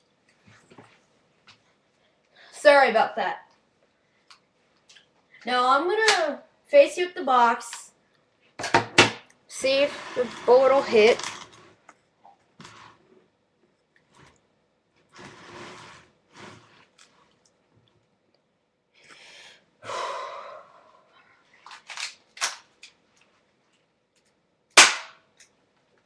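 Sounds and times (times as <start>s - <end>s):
airsoft pistol shot: 24.8s - 25.2s.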